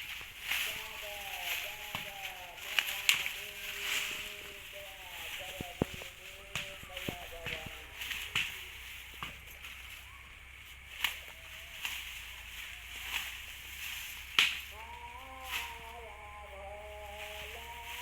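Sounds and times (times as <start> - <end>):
sharp cracks: 0.0 - 10.0, 13.0 - 16.0
steady hiss: 0.0 - 18.0.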